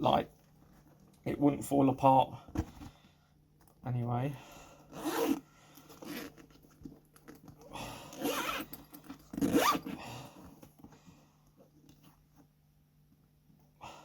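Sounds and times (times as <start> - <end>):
zipper on leather bag: 4.9 - 6.6, 8.1 - 10.0.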